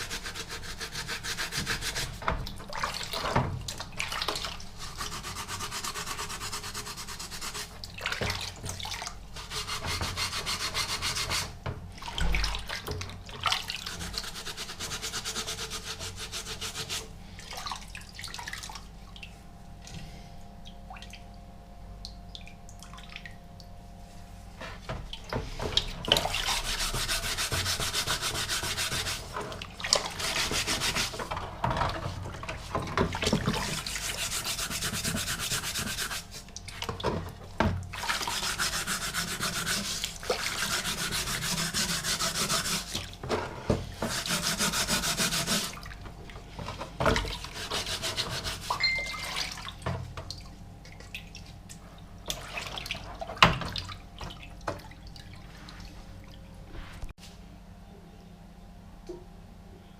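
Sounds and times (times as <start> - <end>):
sponge scrubbing steel helmet: 0.0 - 2.2, 4.8 - 7.8, 9.4 - 11.6, 13.8 - 17.1, 26.3 - 31.4, 32.0 - 36.5, 38.0 - 43.2, 43.8 - 45.9, 47.3 - 49.2.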